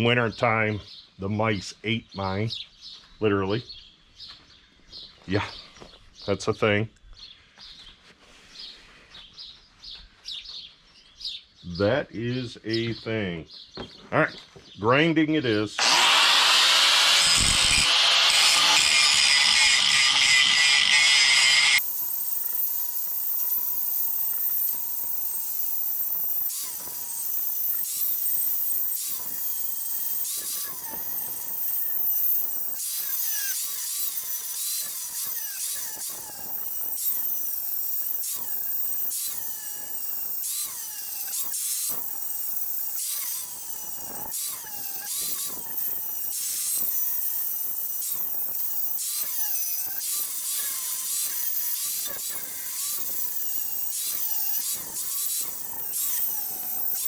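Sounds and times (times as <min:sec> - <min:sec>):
power grinder grinding steel: 0:15.8 - 0:57.0.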